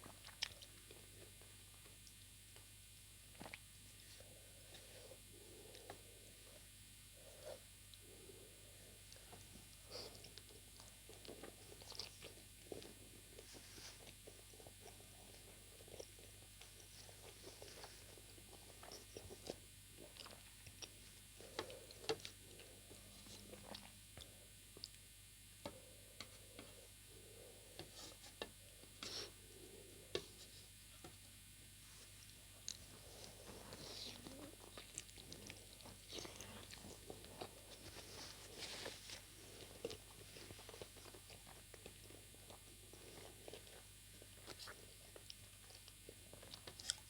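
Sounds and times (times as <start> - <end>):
close chewing with wet smacks: 0.0 - 2.7, 3.3 - 3.7, 9.1 - 25.0, 32.2 - 47.0.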